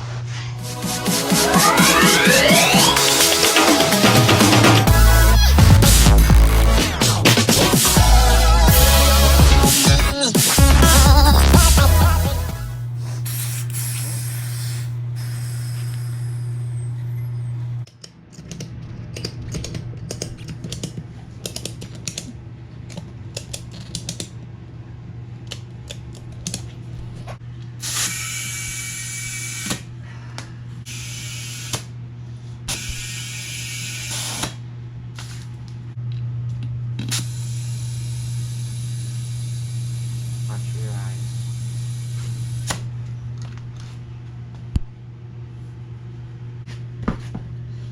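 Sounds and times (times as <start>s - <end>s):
steady low hum: 10.7s - 17.9s
hissing spray bursts: 12.8s - 16.9s.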